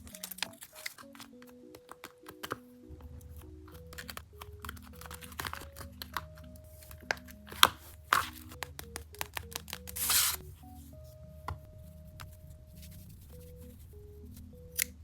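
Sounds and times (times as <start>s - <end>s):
paper rustle or tear: 0.0s - 1.4s, 9.8s - 10.4s
paper crinkling: 0.0s - 10.8s
soft background music: 0.0s - 15.0s.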